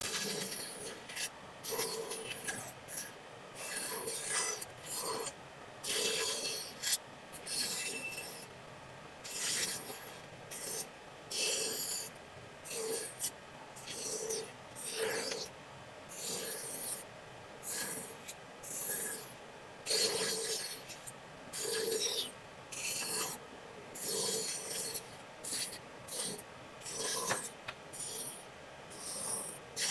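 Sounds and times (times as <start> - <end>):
hand tool rasping on wood: 9.3 - 12.1, 12.7 - 15.5, 16.1 - 17.0, 19.9 - 21.0, 21.6 - 23.4, 24.0 - 28.4, 29.0 - 29.9.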